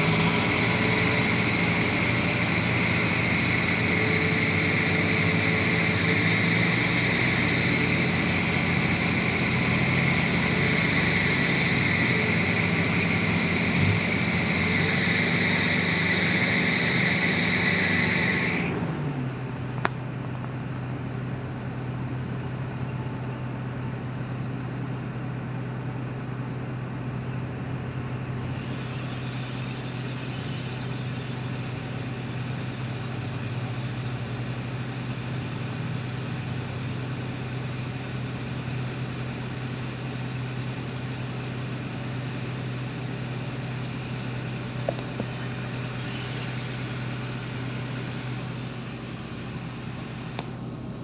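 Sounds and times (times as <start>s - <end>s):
hiss: 0.0s - 18.8s, 28.4s - 42.8s, 43.6s - 50.6s
heavy vehicle engine humming: 0.0s - 51.0s.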